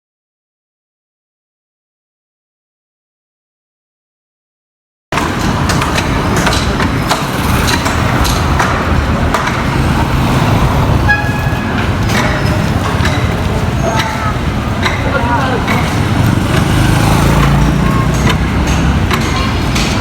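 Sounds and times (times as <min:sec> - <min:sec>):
heavy vehicle engine running: 0:05.2 - 0:20.0
metal knocks and clanks: 0:05.2 - 0:20.0
voices: 0:05.2 - 0:20.0
short horn toot: 0:11.0 - 0:11.8.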